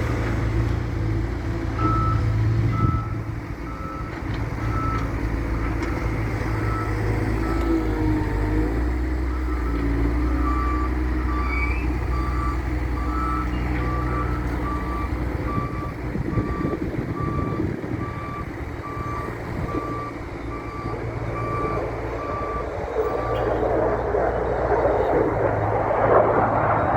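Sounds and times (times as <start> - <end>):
diesel engine running: 0.0 - 26.9
reversing alarm beeping: 1.8 - 4.1, 9.3 - 23.6.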